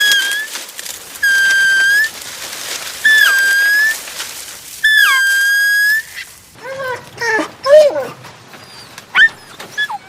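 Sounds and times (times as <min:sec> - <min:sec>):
shrill whistle blasts: 0:01.2 - 0:02.1, 0:03.1 - 0:04.0, 0:04.8 - 0:06.2.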